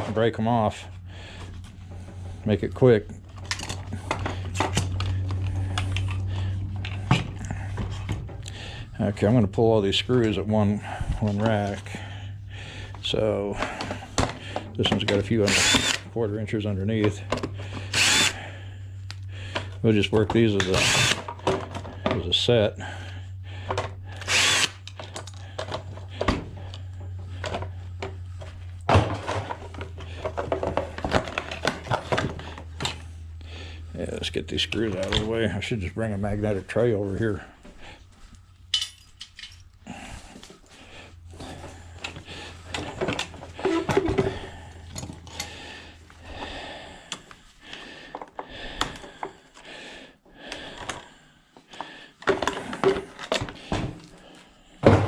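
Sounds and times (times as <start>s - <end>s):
steady low hum: 0.0s - 54.8s
power drill whirring: 15.4s - 16.1s, 17.9s - 18.4s, 20.6s - 21.3s, 24.1s - 24.9s.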